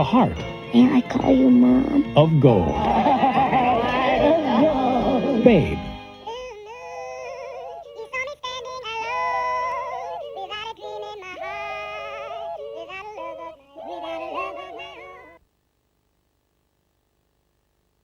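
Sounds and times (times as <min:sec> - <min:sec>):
sped-up high-pitched singing: 0:06.2 - 0:15.4.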